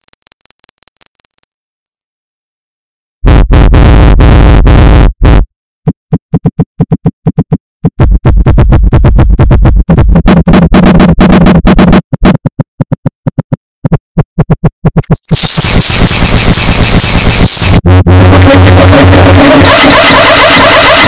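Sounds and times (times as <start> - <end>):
rapid stuttering synthetic clicks: 3.3 - 21.0.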